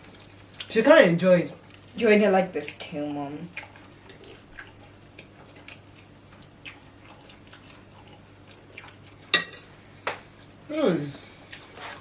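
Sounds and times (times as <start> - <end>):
wet chewing: 2.7 - 9.3.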